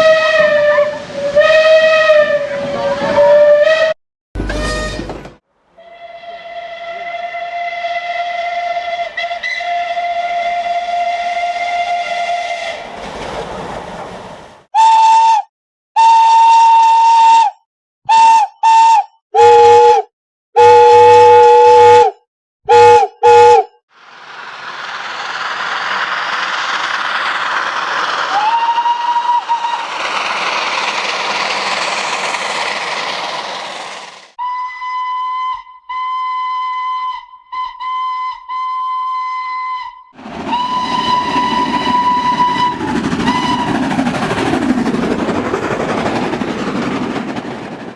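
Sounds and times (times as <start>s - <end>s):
steam locomotive whistle: 0.0s - 13.0s, 14.8s - 23.7s, 28.3s - 33.6s, 34.4s - 43.9s
short sharp whistle blasts: 4.5s - 5.2s
steam hissing: 24.0s - 34.4s.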